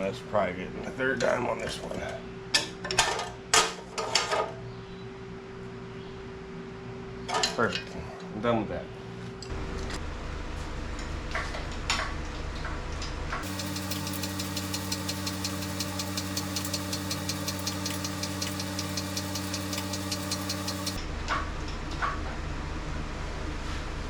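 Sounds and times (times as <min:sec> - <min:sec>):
low steady hum: 0:13.4 - 0:21.0
machine motor ticking: 0:13.4 - 0:21.0.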